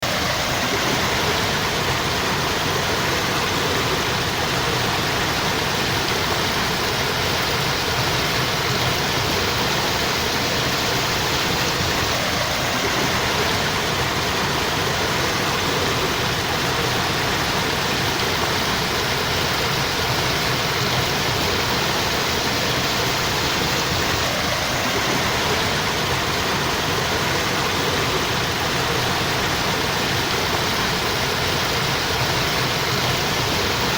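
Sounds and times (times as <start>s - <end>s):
water flowing: 0.0s - 33.9s.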